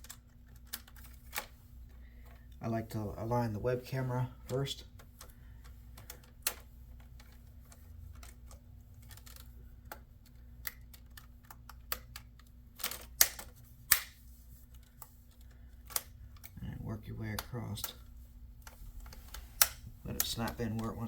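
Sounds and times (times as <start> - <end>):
faint steady hum: 0.0 - 21.0
sharp plastic clicks: 4.5 - 14.2, 18.6 - 21.0
plastic clips snapping: 10.6 - 14.2, 18.7 - 21.0.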